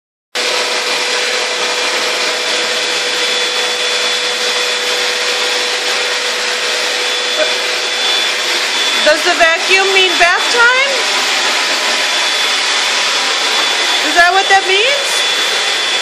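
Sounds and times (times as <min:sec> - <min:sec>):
vacuum cleaner running: 0:00.4 - 0:16.0.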